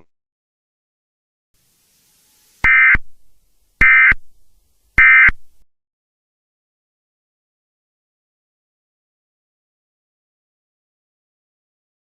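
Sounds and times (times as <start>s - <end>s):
digital data tone bursts: 2.6s - 3.1s, 3.8s - 4.2s, 5.0s - 5.4s.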